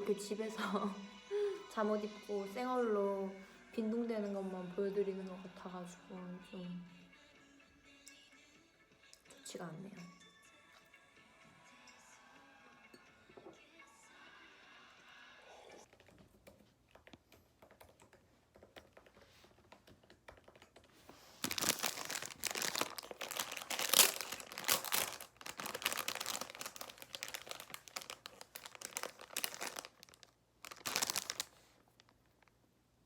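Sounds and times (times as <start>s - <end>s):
bread packaging crinkling: 21.2s - 32.6s.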